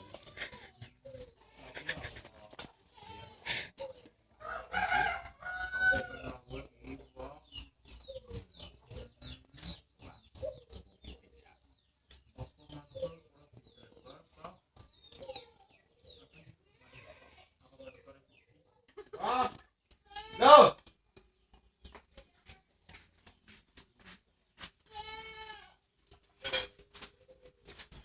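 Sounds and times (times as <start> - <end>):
rough animal call: 19.1 - 20.9.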